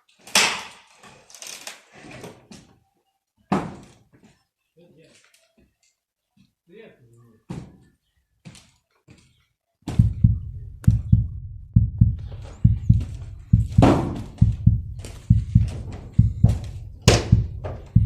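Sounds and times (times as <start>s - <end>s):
dull low thumps: 9.9s - 18.0s.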